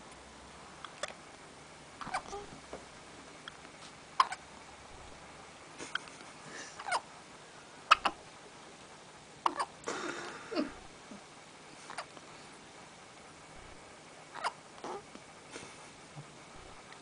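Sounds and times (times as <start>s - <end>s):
hiccups: 7.9s - 8.2s, 9.4s - 9.7s.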